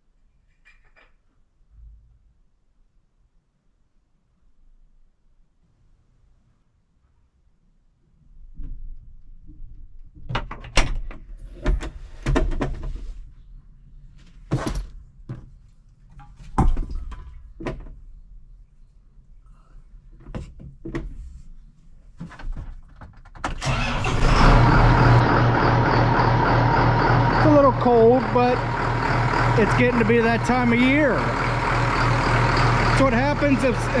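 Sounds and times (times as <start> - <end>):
diesel engine humming: 23.6 - 34.0.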